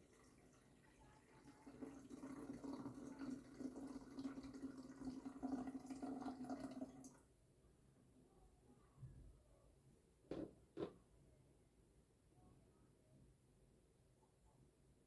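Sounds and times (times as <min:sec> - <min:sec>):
water pouring into plastic tank: 0:01.4 - 0:07.2.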